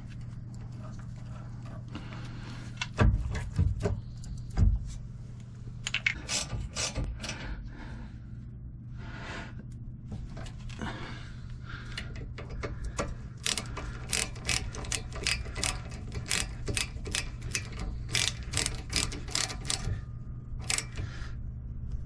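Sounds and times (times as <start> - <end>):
steady low hum: 0.0 - 22.0
ratchet wrench clicking: 12.0 - 20.0, 20.6 - 21.1.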